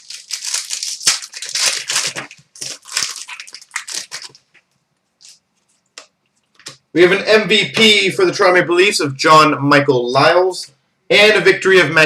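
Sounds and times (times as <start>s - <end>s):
foil wrappers crinkling: 0.0s - 4.6s.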